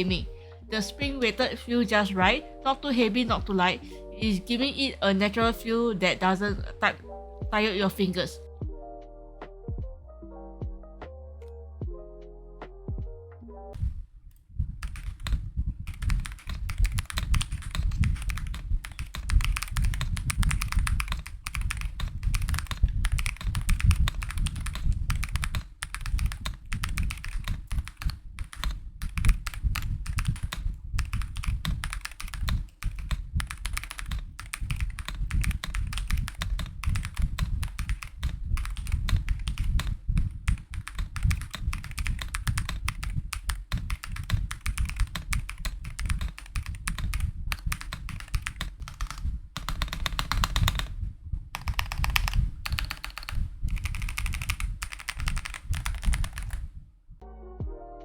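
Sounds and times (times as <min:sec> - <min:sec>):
fast typing on mechanical keyboard: 0:14.8 - 0:51.0, 0:51.6 - 0:56.6.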